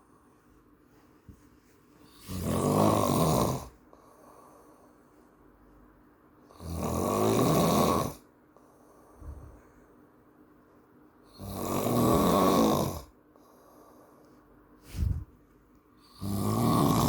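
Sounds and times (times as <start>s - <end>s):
man snoring: 2.1s - 3.8s, 6.5s - 8.2s, 11.3s - 13.1s, 16.1s - 17.0s.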